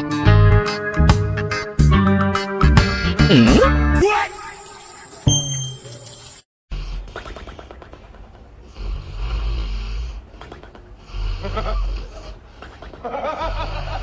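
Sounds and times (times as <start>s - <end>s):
pet snoring: 6.7s - 7.7s, 8.6s - 14.0s.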